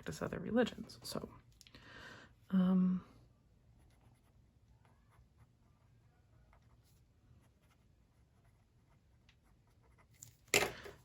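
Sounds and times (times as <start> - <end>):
pen scratching on paper: 7.4 - 10.2.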